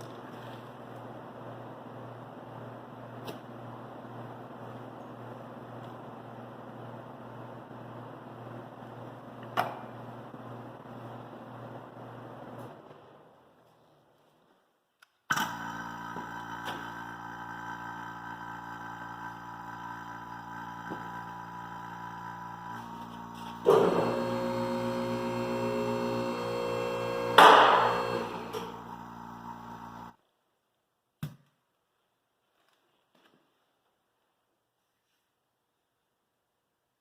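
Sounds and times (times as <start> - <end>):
vacuum pump running: 15.3 - 30.2.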